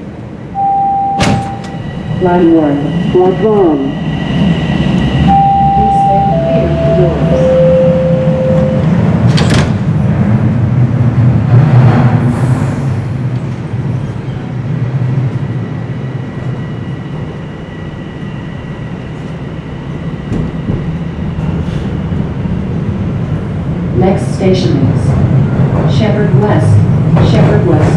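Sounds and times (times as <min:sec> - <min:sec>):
subway train rumbling: 0:00.0 - 0:27.9
subway door chime: 0:00.3 - 0:10.1.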